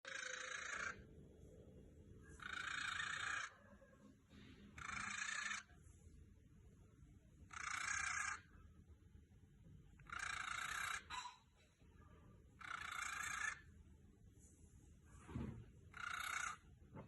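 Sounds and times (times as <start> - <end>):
cockatiel raspy hissing: 4.8 - 5.7.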